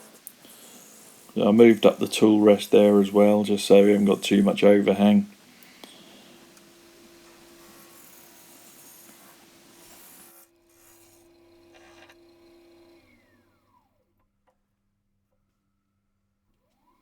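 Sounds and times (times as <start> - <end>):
gouge scraping spinning wood: 0.0 - 12.9
lathe motor hum: 0.0 - 13.9.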